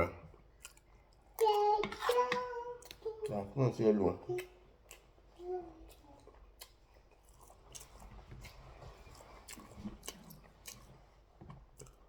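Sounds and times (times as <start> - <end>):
close-up chewing: 0.3 - 3.7, 4.3 - 12.0
wet mouth clicks: 4.4 - 5.2.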